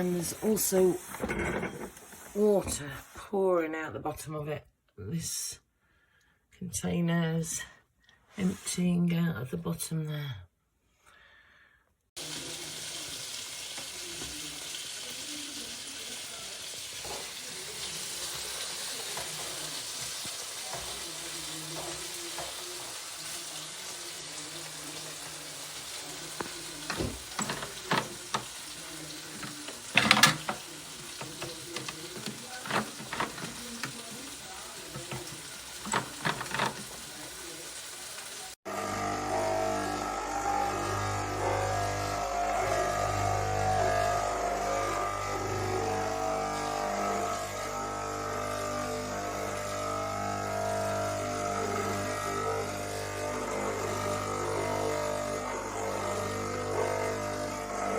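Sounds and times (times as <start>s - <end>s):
espresso machine hissing: 24.1s - 57.9s
machine clicks and knocks: 26.4s - 28.6s, 29.4s - 34.4s, 35.0s - 37.1s.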